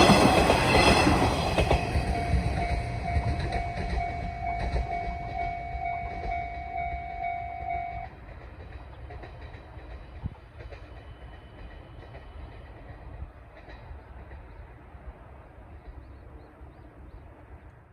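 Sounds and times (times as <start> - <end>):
level-crossing alarm clanging: 0.0 - 8.1
diesel railcar rumble: 0.0 - 17.8.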